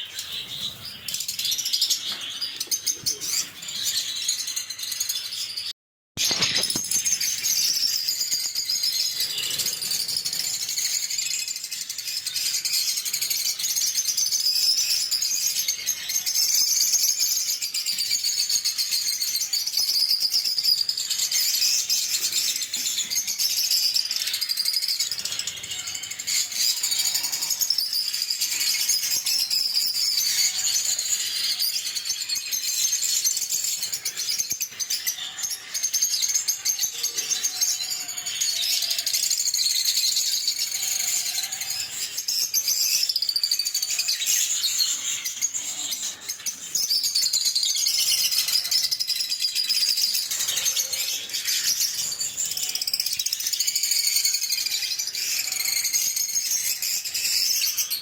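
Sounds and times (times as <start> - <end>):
lovebirds chirping: 0.0 - 11.0.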